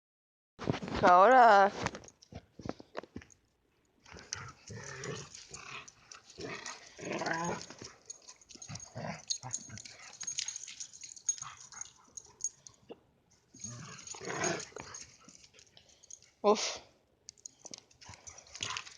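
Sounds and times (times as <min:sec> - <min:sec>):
dogs making throaty sounds: 0:04.0 - 0:16.4, 0:17.6 - 0:18.9
dog whining: 0:07.0 - 0:07.8.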